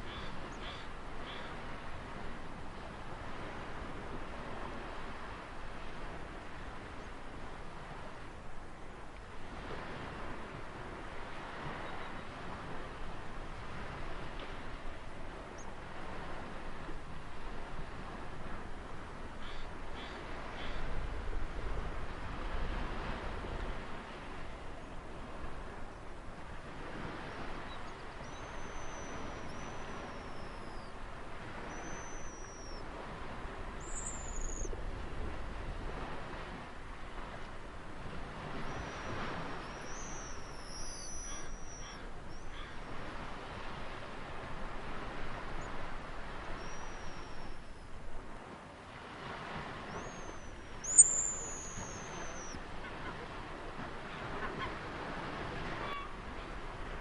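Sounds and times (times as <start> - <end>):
ocean waves washing in: 0.0 - 57.0
birds calling in high whistles: 27.6 - 31.0, 31.6 - 32.9, 33.8 - 34.7, 38.6 - 42.8, 46.5 - 47.8, 49.9 - 52.6.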